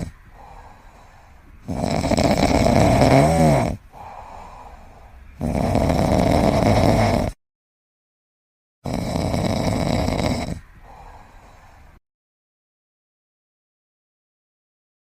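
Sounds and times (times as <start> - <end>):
loud rasping snoring: 0.0 - 0.6, 1.6 - 4.8, 5.4 - 7.4, 8.8 - 11.6
quiet breathing: 0.0 - 7.4, 9.0 - 12.0
whistle-like tone in snore: 1.6 - 3.8, 5.4 - 7.3, 8.9 - 10.6.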